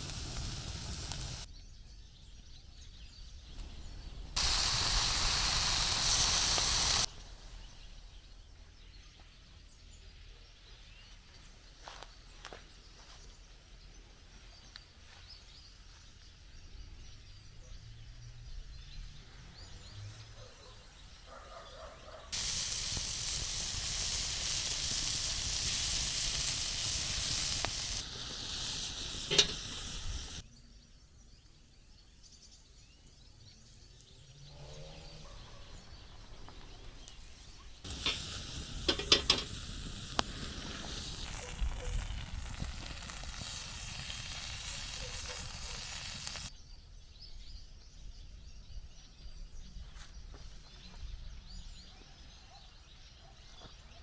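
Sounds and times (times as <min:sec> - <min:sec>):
food sizzling over fire: 0:00.0 - 0:01.5, 0:03.5 - 0:13.2, 0:22.3 - 0:30.4, 0:34.5 - 0:46.5
sharp pops: 0:00.0 - 0:01.5, 0:03.5 - 0:08.2, 0:22.4 - 0:30.4, 0:36.2 - 0:46.5
outdoor background: 0:00.0 - 0:54.0.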